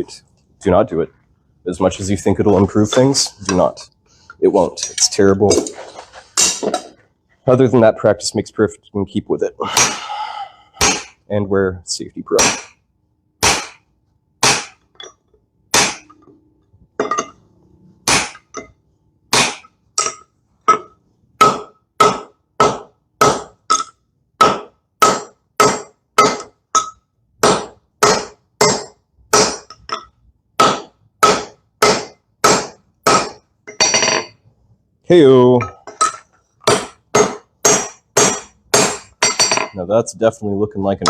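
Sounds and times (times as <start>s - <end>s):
hammer striking metal on anvil: 10.8s - 11.2s, 12.4s - 12.8s, 15.7s - 16.2s, 19.3s - 34.3s, 35.6s - 39.8s.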